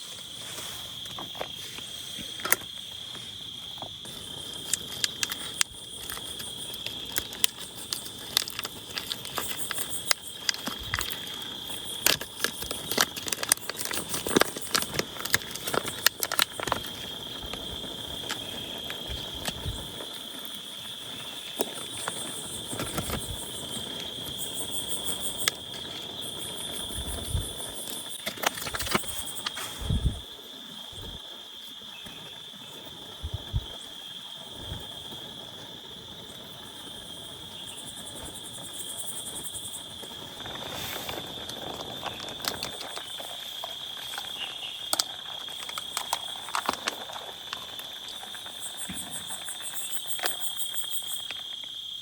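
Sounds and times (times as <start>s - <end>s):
high-pitched insect trilling: 0.0s - 52.0s.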